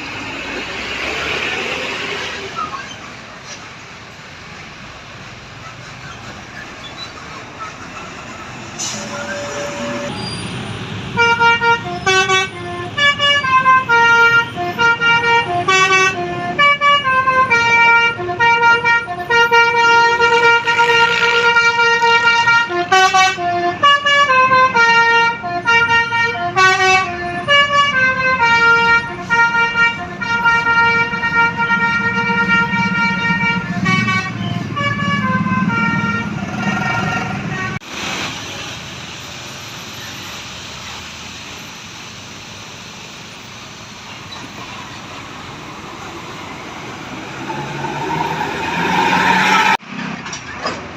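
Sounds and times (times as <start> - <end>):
bus engine running: 0.0 - 50.9
steady traffic noise: 0.0 - 50.9
bus horn playing a melody: 8.8 - 10.4, 11.1 - 37.8.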